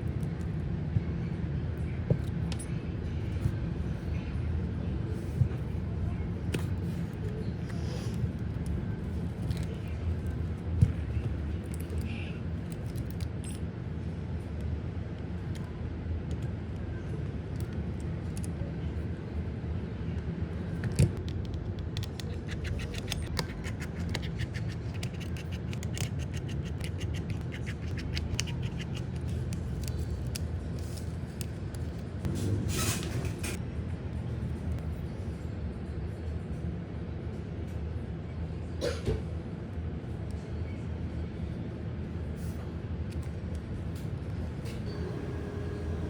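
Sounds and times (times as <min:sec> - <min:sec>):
hand tools clicking and scraping: 0:21.9 - 0:30.0
steady low hum: 0:39.4 - 0:46.0.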